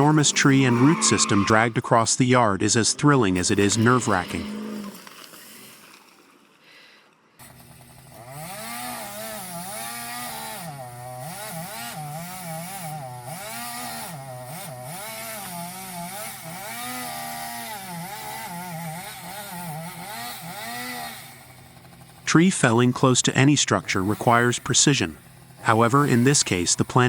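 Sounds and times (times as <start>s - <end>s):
chainsaw cutting wood: 0.0s - 1.7s, 3.3s - 5.8s, 7.4s - 22.3s, 23.8s - 27.0s.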